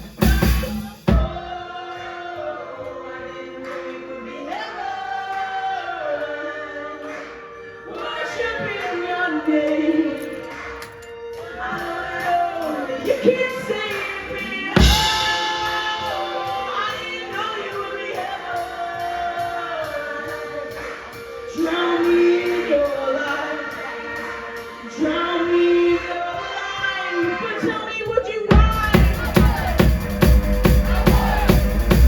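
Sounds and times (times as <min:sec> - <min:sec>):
music with singing: 0:00.0 - 0:32.0.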